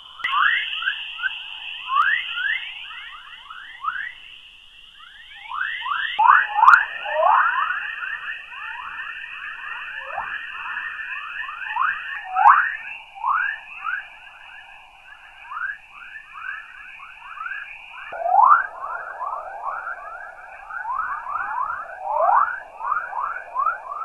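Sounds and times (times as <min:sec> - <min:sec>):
short rising radio chirps: 0:00.0 - 0:07.2, 0:17.3 - 0:24.0
steady high hiss: 0:00.0 - 0:24.0.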